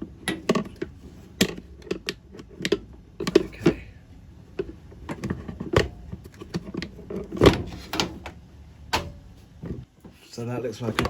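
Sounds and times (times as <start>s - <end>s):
hard parts clicking and knocking: 0.0s - 3.9s.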